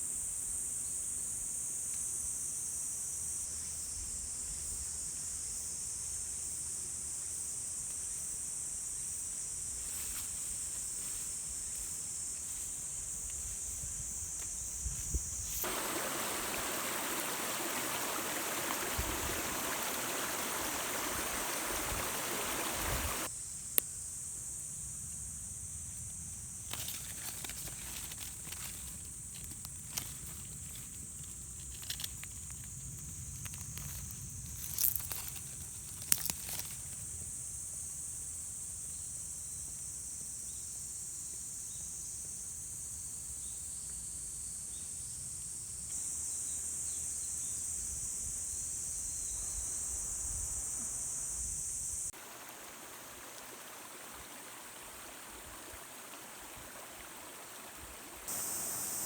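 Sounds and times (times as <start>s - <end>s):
steady high hiss: 0.0s - 39.5s, 44.4s - 59.0s
rustles: 9.7s - 23.3s, 26.1s - 37.3s, 50.4s - 59.0s.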